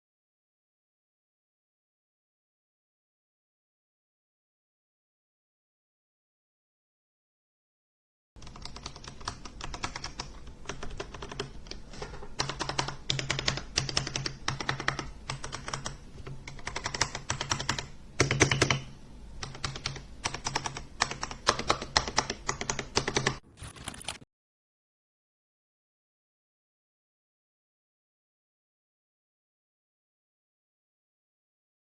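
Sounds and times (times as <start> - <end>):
mechanical keyboard typing: 8.4 - 24.2.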